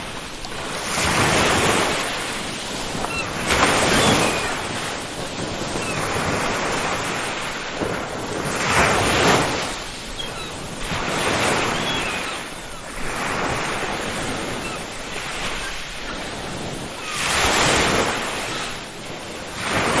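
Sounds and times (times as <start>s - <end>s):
ocean waves washing onto beach: 0.0s - 20.0s
faint seagull cries: 3.0s - 5.0s, 11.3s - 13.1s.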